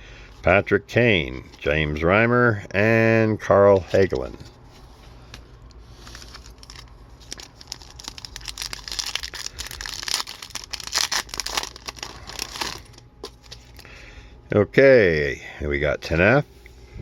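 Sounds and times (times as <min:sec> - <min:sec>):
wrapper tearing and crinkling: 0:05.9 - 0:13.8.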